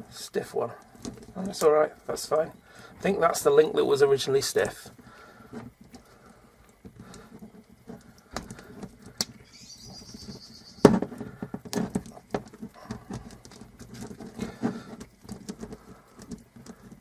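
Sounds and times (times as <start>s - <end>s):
high squeak: 9.5s - 10.9s.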